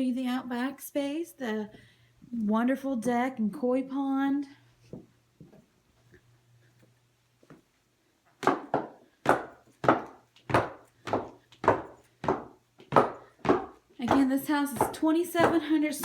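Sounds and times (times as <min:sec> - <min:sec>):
footsteps down a staircase: 0:08.4 - 0:16.0.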